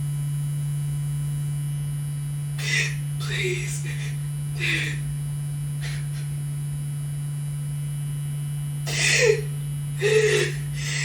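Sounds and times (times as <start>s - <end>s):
low electrical hum: 0.0s - 11.0s
woman whimpering: 2.6s - 5.1s, 5.8s - 6.3s, 8.9s - 11.0s.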